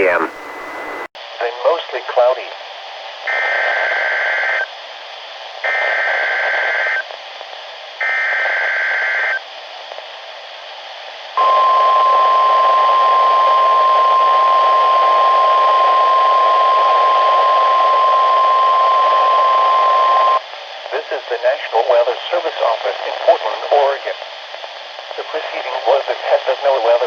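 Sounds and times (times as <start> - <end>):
radio hiss: 0.0 - 2.7, 15.6 - 27.0.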